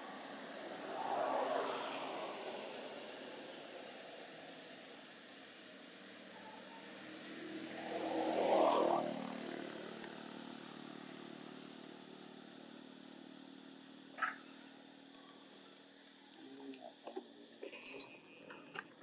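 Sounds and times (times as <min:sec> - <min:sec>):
motor vehicle passing: 0:00.0 - 0:05.0, 0:06.8 - 0:12.5, 0:14.0 - 0:14.8
steady engine hum: 0:00.0 - 0:19.0.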